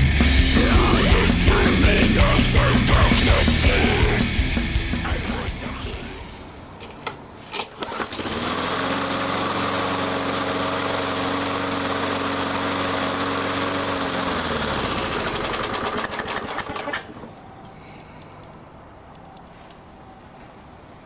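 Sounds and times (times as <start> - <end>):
lawn mower engine running: 0.0 - 6.8, 8.5 - 16.2.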